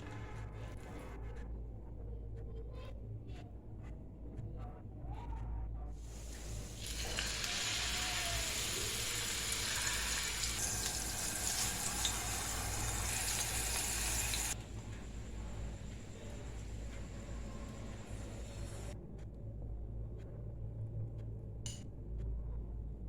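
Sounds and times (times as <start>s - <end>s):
low steady hum: 1.6s - 23.0s
kebabs sizzling in oil: 6.0s - 18.9s.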